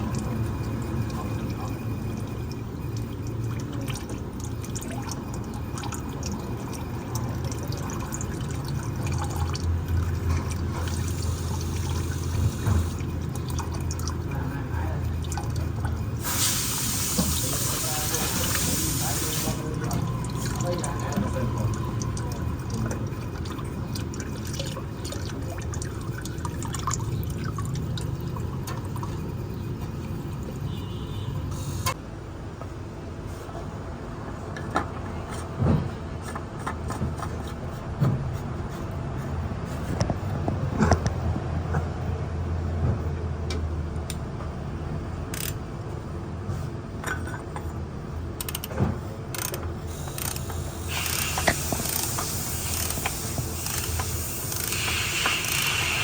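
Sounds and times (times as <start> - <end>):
oil pouring and dripping: 0.0 - 30.9, 49.9 - 56.0
low steady hum: 0.0 - 35.4.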